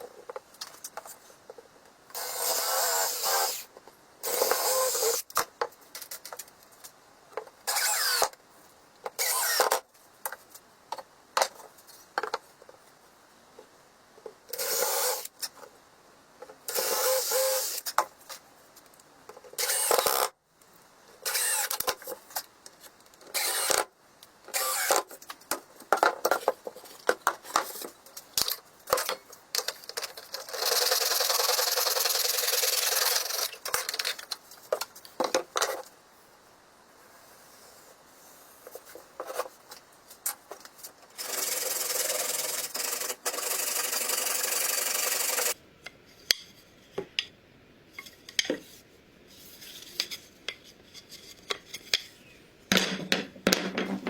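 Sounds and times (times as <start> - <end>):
tools knocking and clicking: 52.7 - 54.0.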